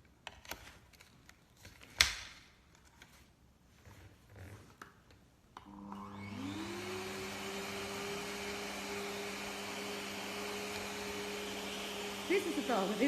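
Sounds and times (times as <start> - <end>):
vacuum cleaner motor whine: 5.6 - 13.0.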